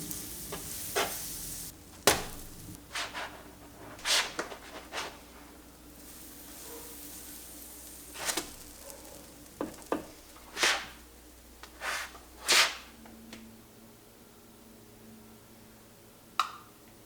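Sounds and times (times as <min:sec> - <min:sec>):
kitchen utensil scraping: 0:02.2 - 0:05.5, 0:08.1 - 0:11.0, 0:11.7 - 0:13.0.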